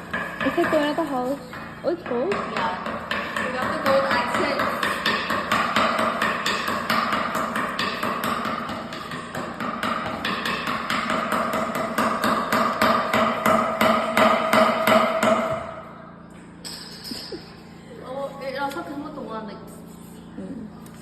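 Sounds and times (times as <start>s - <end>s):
rapid hammer strikes: 0.0s - 15.9s
steady hum: 0.0s - 21.0s.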